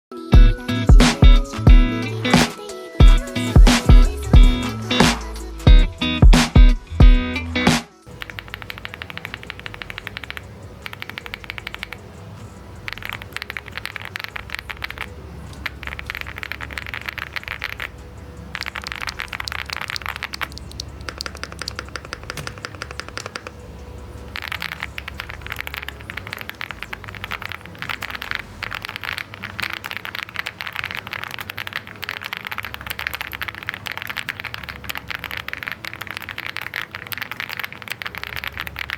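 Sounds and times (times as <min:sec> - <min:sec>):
fast mechanical keyboard typing: 0:08.1 - 0:12.2, 0:12.8 - 0:38.9.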